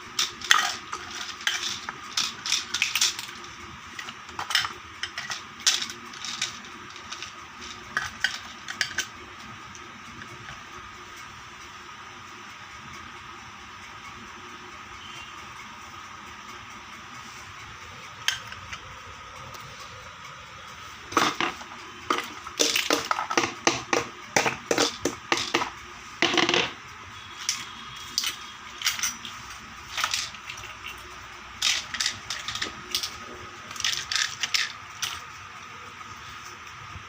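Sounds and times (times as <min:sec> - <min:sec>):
toy kitchenware clicking and clattering: 0:00.0 - 0:10.8, 0:18.0 - 0:19.1, 0:21.0 - 0:35.8
faint background hum: 0:00.0 - 0:37.0.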